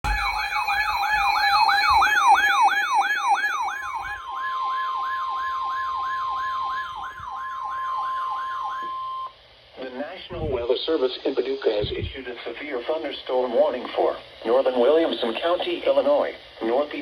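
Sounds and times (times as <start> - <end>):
steady alert tone: 0.0 - 9.3
siren sweeping up and down: 0.0 - 9.4.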